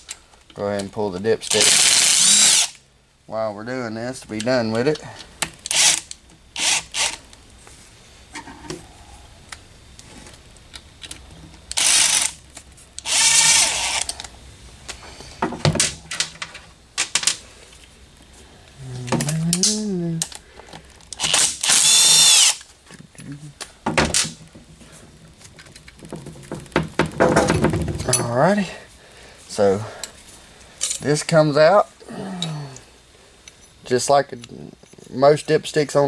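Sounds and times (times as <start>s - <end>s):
cordless drill whining: 1.5s - 2.8s, 5.6s - 7.3s, 11.7s - 12.4s, 13.0s - 14.3s, 21.2s - 22.7s.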